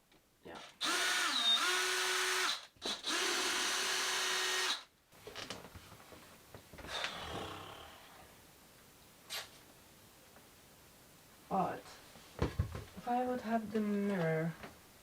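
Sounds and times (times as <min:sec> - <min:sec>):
power drill running: 0:00.8 - 0:04.9.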